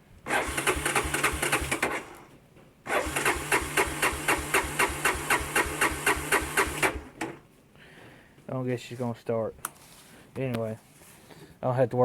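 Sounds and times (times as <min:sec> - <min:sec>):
engine cranking without starting: 0:00.2 - 0:07.4.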